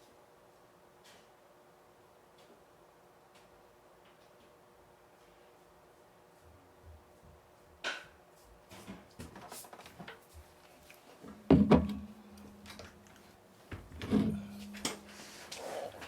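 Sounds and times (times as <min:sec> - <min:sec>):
low hum: 0:14.0 - 0:15.4.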